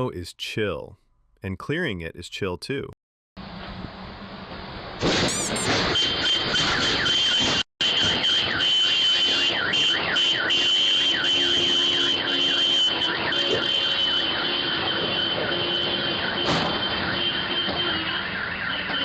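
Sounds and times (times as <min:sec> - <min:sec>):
car alarm: 0:05.3 - 0:19.0.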